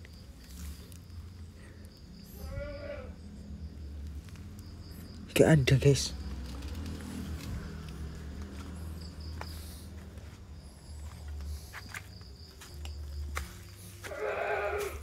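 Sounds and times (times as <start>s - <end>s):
insects chirping: 0.0s - 15.0s
footsteps: 6.4s - 15.0s
loud animal call: 14.1s - 15.0s.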